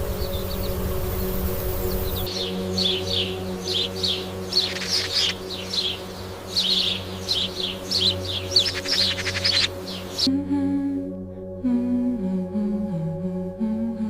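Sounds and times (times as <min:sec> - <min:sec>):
small birds chirping: 0:00.0 - 0:10.3
low steady drone: 0:00.0 - 0:14.0
bird rattling trill: 0:00.1 - 0:10.3.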